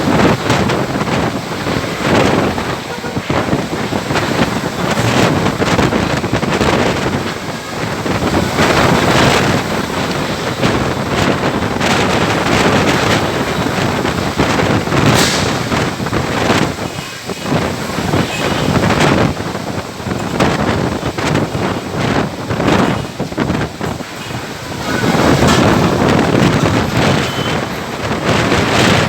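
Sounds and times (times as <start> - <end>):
wind gusting against microphone: 0.0 - 29.0.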